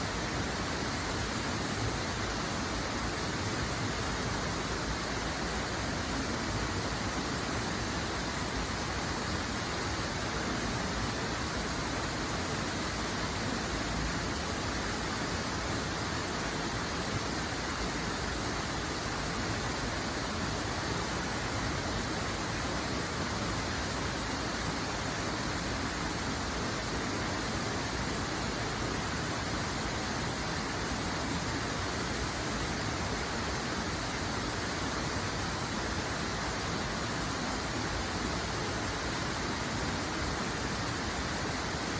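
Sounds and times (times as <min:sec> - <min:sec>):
rush of flowing water: 0:00.0 - 0:41.9.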